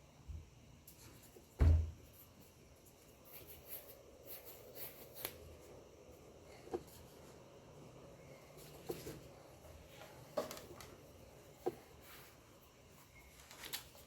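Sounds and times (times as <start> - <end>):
dull thump: 1.6 - 2.0.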